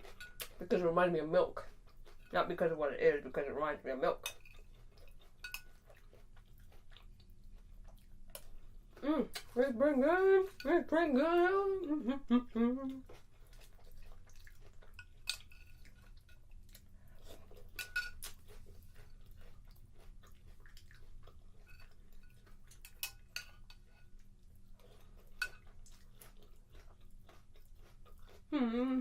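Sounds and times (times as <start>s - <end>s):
soft chewing: 0.0s - 29.0s
spoon clinking against bowl: 5.4s - 5.7s, 17.8s - 18.3s.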